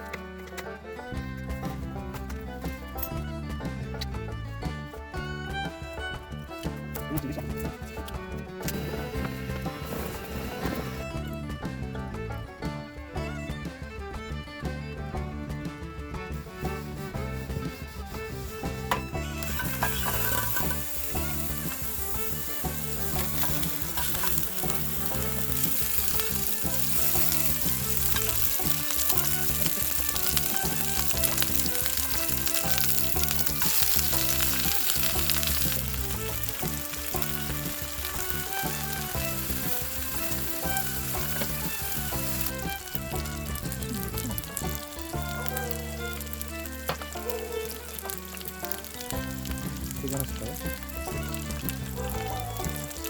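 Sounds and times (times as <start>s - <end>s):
background music: 0.0s - 53.0s
food sizzling in a pan: 17.6s - 53.0s.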